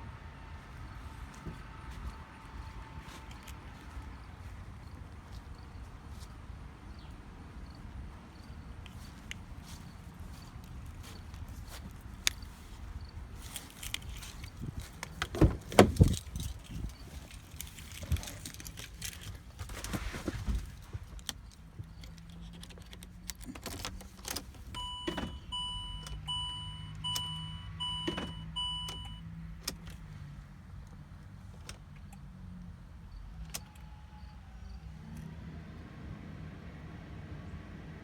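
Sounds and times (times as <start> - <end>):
dashboard warning beeps: 24.8 - 29.2.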